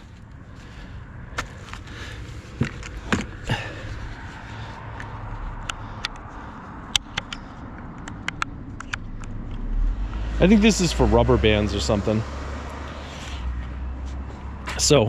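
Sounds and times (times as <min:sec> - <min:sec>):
low rumble: 0:02.9 - 0:14.6.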